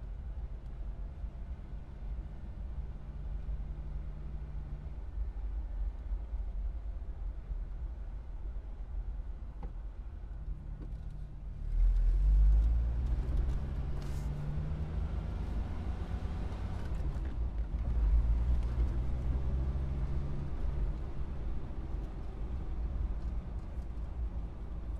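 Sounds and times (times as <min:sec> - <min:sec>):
car engine accelerating: 0:11.7 - 0:17.2.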